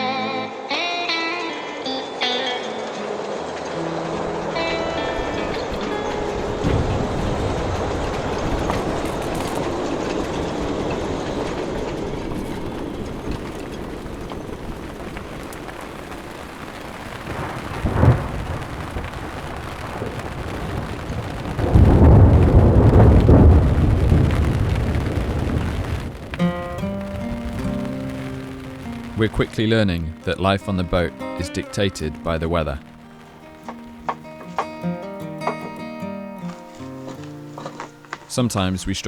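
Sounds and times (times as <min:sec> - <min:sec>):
water rushing: 0:01.6 - 0:39.0
loud crack: 0:01.7 - 0:38.6
wind rushing: 0:03.0 - 0:30.4
heavy low rumble: 0:03.0 - 0:33.7.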